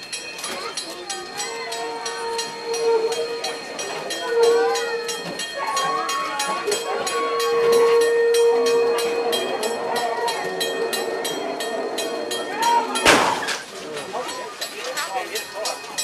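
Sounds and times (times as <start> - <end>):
train clattering on rails: 0.0 - 16.0
steady tone: 1.5 - 13.5.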